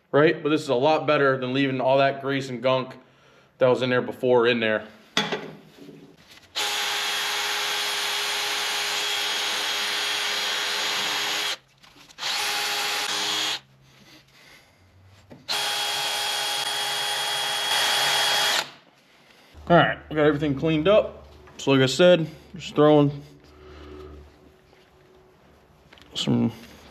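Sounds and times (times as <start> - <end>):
drill with wire brush scrubbing: 6.5 - 13.7, 15.5 - 18.7.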